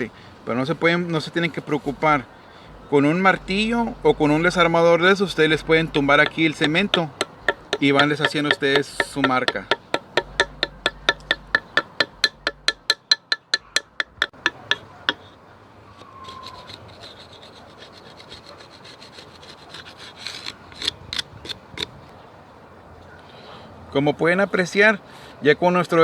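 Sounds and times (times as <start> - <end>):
screwdriver scraping cement: 5.4 - 15.4, 16.2 - 21.6.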